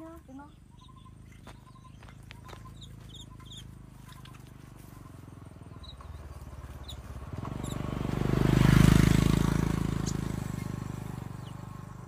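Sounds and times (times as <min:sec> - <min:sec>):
faint bird chirps: 0:00.0 - 0:07.8
motorcycle passing: 0:00.0 - 0:12.0.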